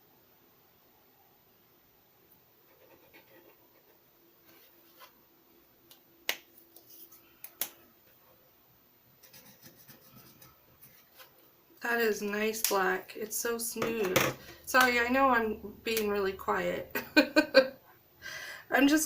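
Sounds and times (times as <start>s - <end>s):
marker tip scratching paper: 9.2s - 11.3s.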